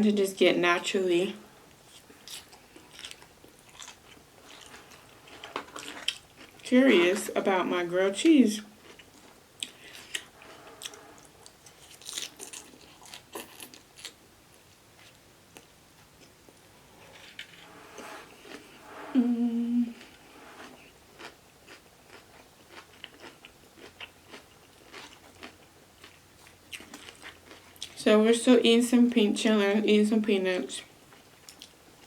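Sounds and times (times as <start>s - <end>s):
chewing food: 1.9s - 7.3s, 8.7s - 14.2s, 20.0s - 28.0s, 31.0s - 32.0s
food crunching: 1.9s - 7.4s, 8.7s - 14.3s, 20.0s - 28.0s, 31.1s - 31.8s
person humming: 19.1s - 20.1s.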